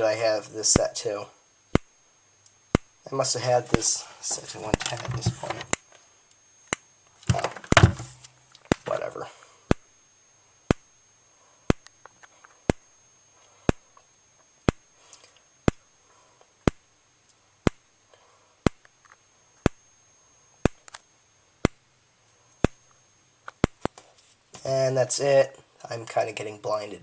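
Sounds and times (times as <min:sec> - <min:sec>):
strobe flash clicks: 0:01.7 - 0:03.0, 0:05.7 - 0:09.0, 0:09.7 - 0:10.0, 0:10.6 - 0:11.0, 0:11.7 - 0:15.9, 0:16.6 - 0:17.9, 0:18.6 - 0:24.0.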